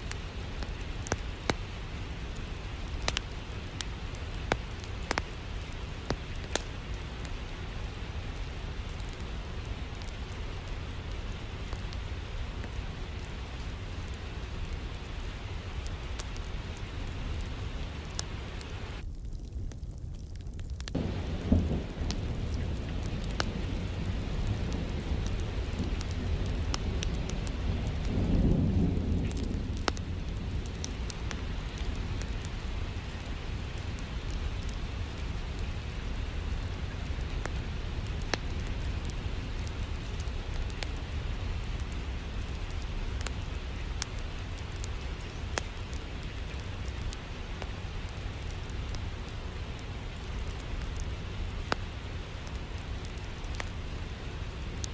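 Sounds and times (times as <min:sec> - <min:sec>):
fireplace fire crackling: 0:00.0 - 0:54.9
steady rain: 0:00.0 - 0:54.9
thunder rumble: 0:21.0 - 0:44.0.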